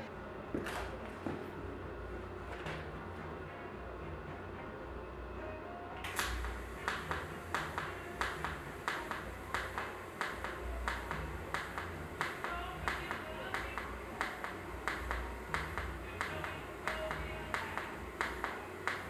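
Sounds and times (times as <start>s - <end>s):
low hum: 0.0s - 19.0s
welding arc cracking: 6.1s - 19.0s.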